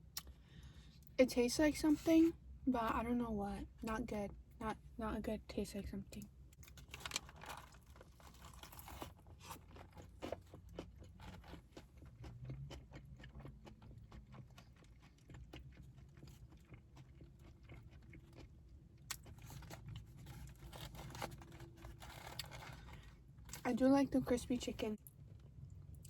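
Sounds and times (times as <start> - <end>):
chewing crispy food: 6.6 - 23.8.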